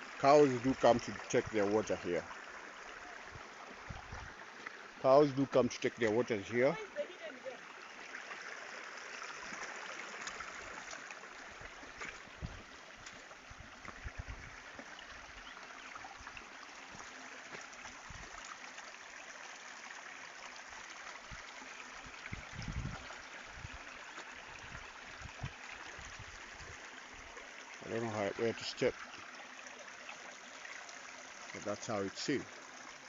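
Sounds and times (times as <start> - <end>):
river water rushing: 0.0 - 13.9.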